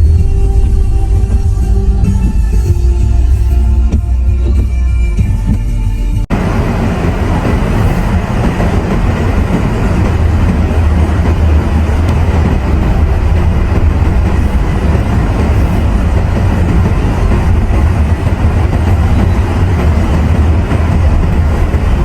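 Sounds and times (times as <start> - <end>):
car driving road noise: 5.6 - 22.0.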